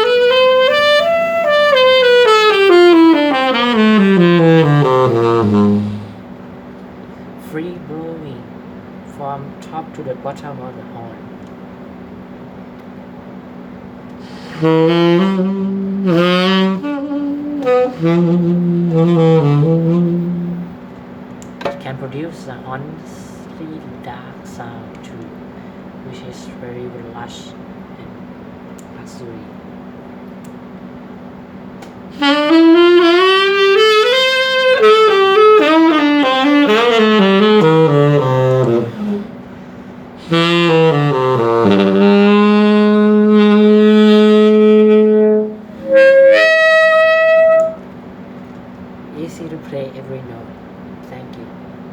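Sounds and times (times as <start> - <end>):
tenor saxophone low notes: 0.0 - 6.4, 14.1 - 21.0, 31.8 - 48.4.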